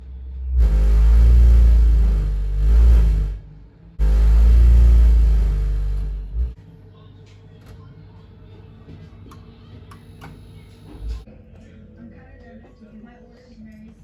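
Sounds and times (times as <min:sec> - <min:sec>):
boiler rumbling drone: 0:00.0 - 0:06.6
pitched hum: 0:00.0 - 0:06.6, 0:09.3 - 0:11.2.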